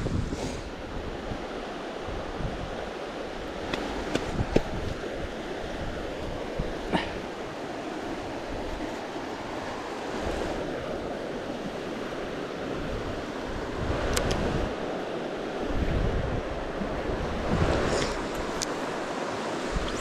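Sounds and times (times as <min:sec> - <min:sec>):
wind rumble on microphone: 0:00.0 - 0:20.0
river water rushing: 0:00.6 - 0:20.0
sharp clicks: 0:14.1 - 0:14.4.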